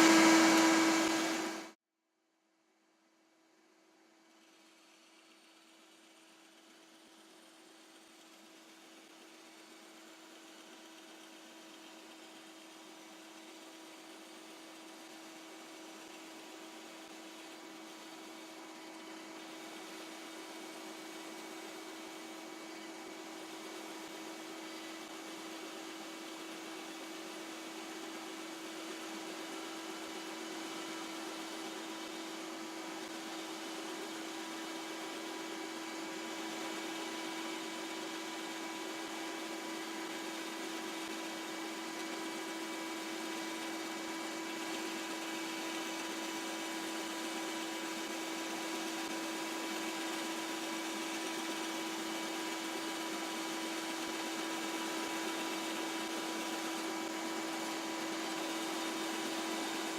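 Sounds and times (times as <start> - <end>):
bandsaw cutting wood: 0.0 - 1.8
shop vac running: 0.0 - 1.8, 4.4 - 59.9.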